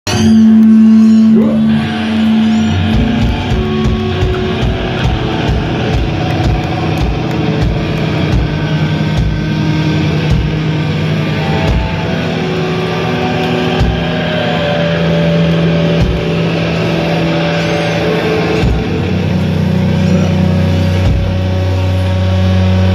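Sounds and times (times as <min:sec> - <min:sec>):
distorted guitar and bass drone: 0:00.0 - 0:22.9
heavy drum hits: 0:01.7 - 0:12.5, 0:13.2 - 0:14.6, 0:15.9 - 0:17.1, 0:18.5 - 0:19.8, 0:20.8 - 0:21.8.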